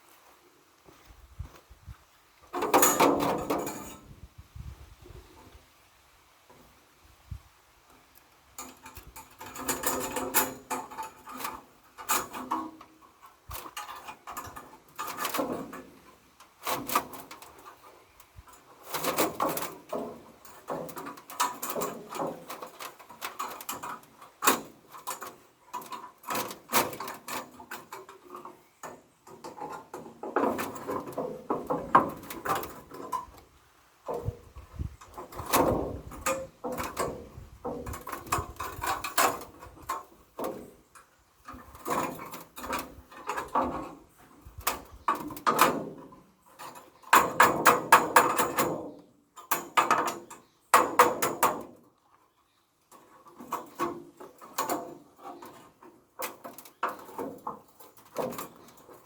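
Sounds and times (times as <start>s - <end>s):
knocking scraping and clattering: 2.5s - 4.1s, 8.6s - 51.8s.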